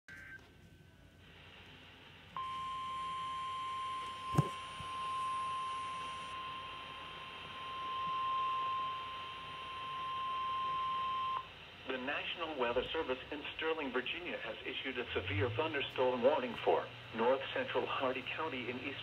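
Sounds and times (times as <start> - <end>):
faint radio hiss: 0.1 - 19.0
steady high alarm tone: 2.4 - 11.5.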